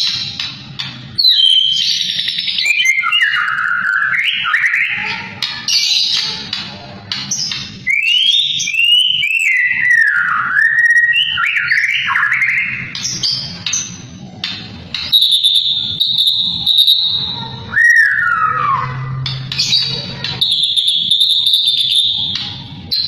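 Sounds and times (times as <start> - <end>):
bird singing whistled phrases: 1.2 - 5.1, 7.9 - 12.9, 15.1 - 23.0.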